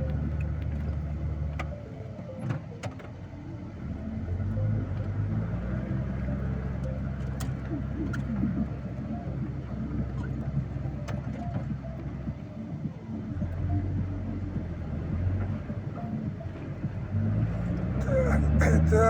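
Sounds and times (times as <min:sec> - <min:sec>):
vehicle engine running: 0:00.0 - 0:02.4, 0:03.0 - 0:19.0.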